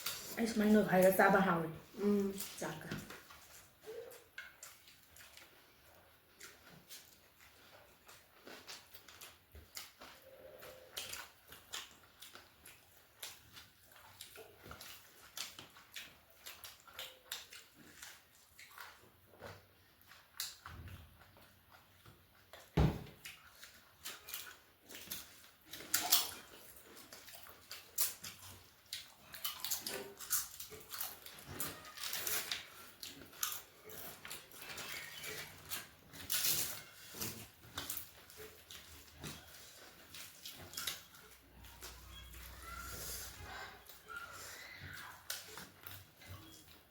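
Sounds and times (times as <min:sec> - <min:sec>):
person chewing: 0:00.0 - 0:00.4, 0:01.8 - 0:46.9.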